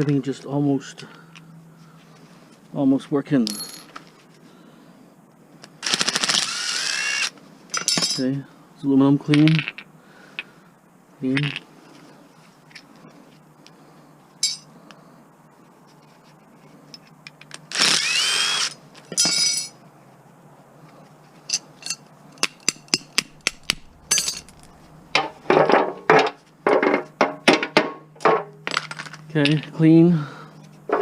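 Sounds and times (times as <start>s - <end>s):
metal tools clinking and scraping: 3.4s - 4.2s, 7.7s - 8.4s, 14.4s - 14.7s, 19.1s - 19.8s, 21.4s - 29.8s.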